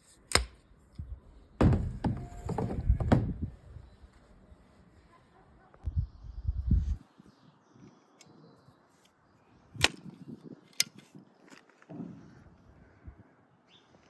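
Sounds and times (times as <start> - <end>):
rifle action metallic clicks: 0.3 - 0.6
soft knock: 1.6 - 3.5.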